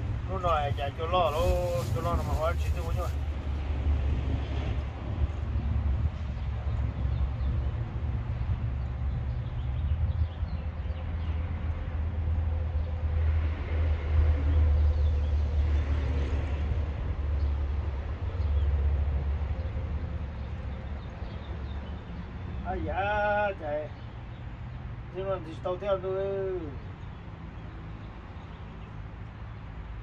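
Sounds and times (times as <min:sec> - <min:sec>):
car engine rumbling: 0:00.0 - 0:03.3.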